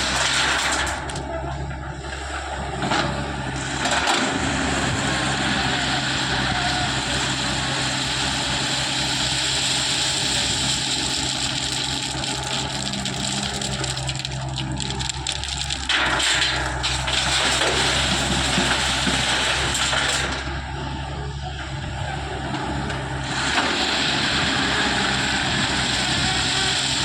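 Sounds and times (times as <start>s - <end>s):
heavy machinery diesel engine: 0.0s - 27.0s.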